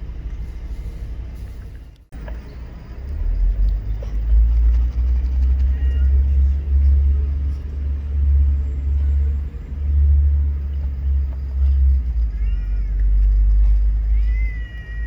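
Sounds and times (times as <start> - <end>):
cat meowing: 5.7 - 6.6, 11.6 - 15.0.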